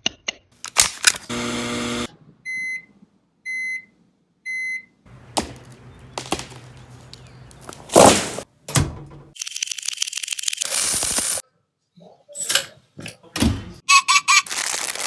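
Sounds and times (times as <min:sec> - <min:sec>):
appliance beeping: 0:01.3 - 0:02.9.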